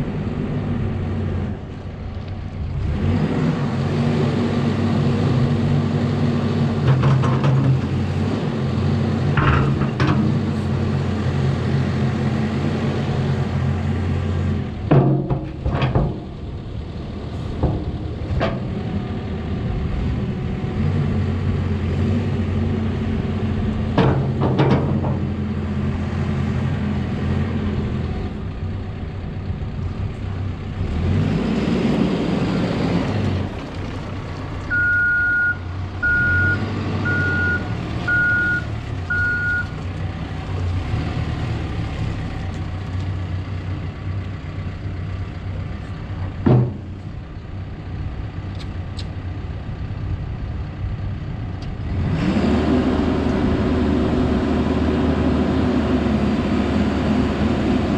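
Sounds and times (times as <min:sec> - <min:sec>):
diesel engine running: 0:00.0 - 0:57.9
reversing alarm beeping: 0:34.7 - 0:39.8.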